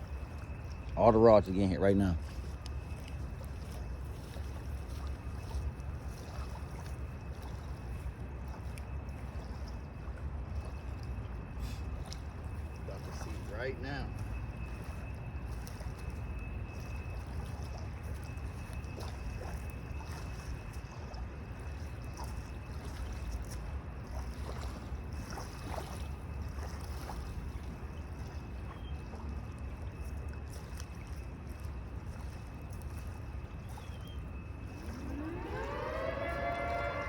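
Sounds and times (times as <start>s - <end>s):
siren wailing: 11.2s - 22.6s, 33.9s - 37.0s
low outdoor rumble: 26.1s - 37.0s.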